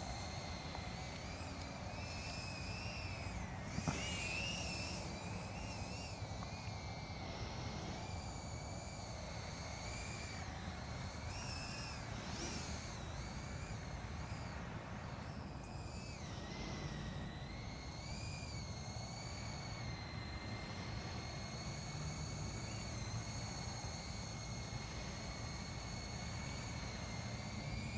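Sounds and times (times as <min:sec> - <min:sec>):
quadcopter motors whining: 0:00.0 - 0:27.9.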